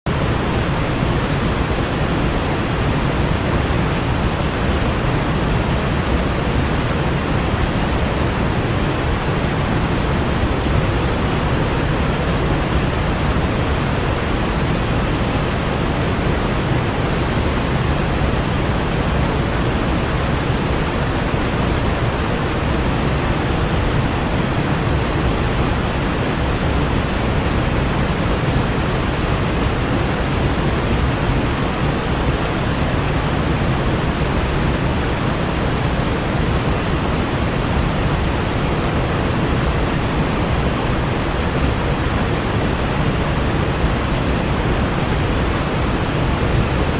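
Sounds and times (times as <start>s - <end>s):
waterfall rushing: 0.1s - 46.9s.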